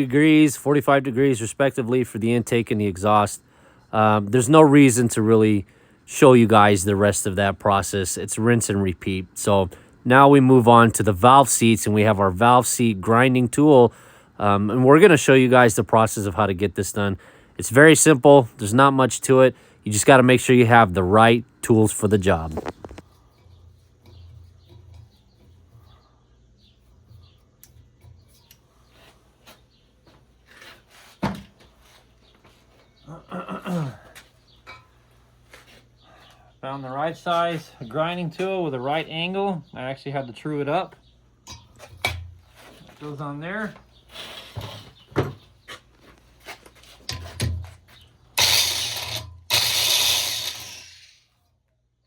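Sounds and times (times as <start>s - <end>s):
faint bird chirps: 22.6s - 29.9s, 32.2s - 35.0s
drill grinding valve seat: 48.4s - 51.2s.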